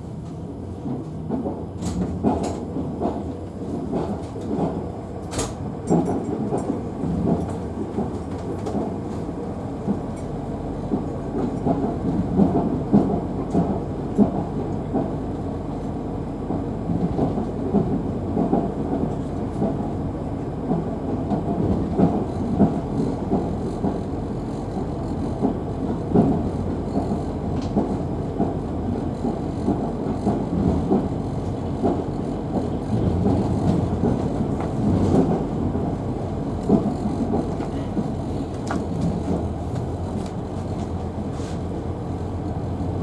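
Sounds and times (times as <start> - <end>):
train wheels rumbling on rails: 0.0 - 43.0
train knocks: 20.6 - 43.0.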